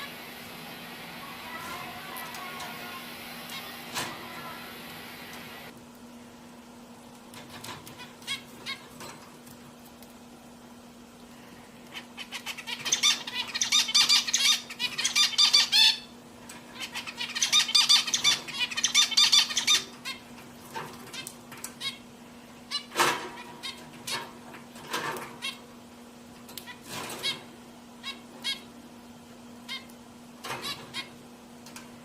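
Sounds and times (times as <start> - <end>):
steady low hum: 0.0 - 32.0
finches chattering: 1.2 - 5.7, 12.1 - 16.1, 16.7 - 20.2.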